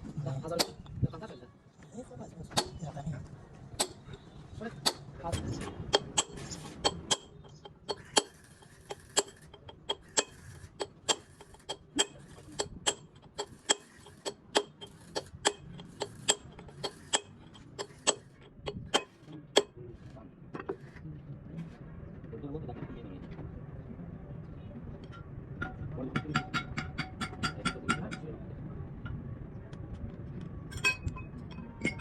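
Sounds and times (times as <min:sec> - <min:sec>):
hammer striking metal: 0:03.8 - 0:04.2, 0:04.8 - 0:19.8, 0:25.6 - 0:28.2, 0:30.7 - 0:32.0.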